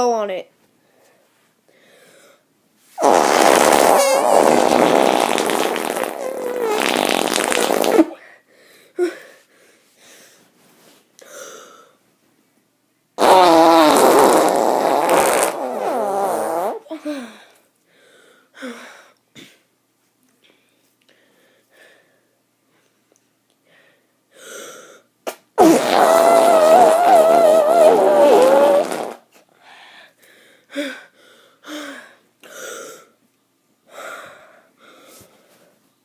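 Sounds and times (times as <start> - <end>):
kid blowing raspberry on leg: 3.0 - 8.2, 13.2 - 17.0, 25.3 - 29.4.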